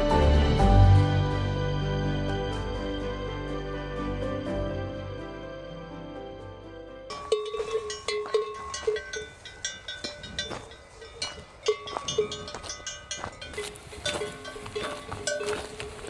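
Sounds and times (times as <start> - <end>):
cattle bells clanking: 7.1 - 16.0.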